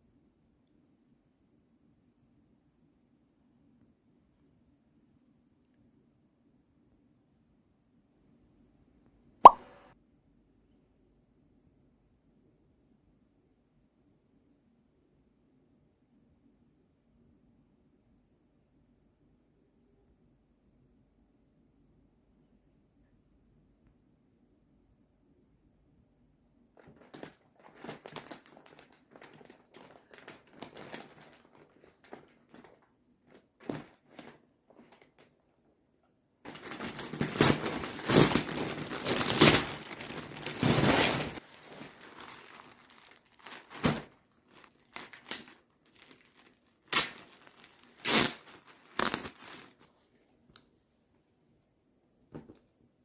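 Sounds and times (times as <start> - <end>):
crinkling and rustling handling: 26.8 - 35.6, 36.5 - 51.2
scattered crackles: 36.5 - 49.7.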